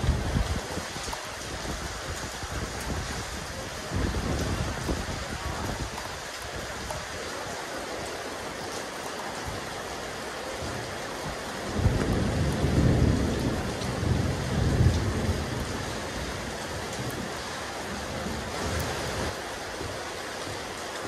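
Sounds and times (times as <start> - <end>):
rain on a rooftop: 0.0 - 21.0.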